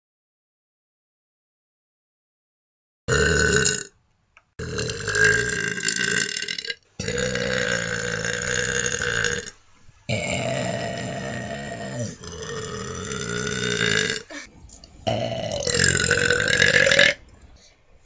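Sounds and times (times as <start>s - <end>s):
person burping loudly: 3.1s - 3.9s, 4.6s - 9.5s, 10.1s - 17.2s.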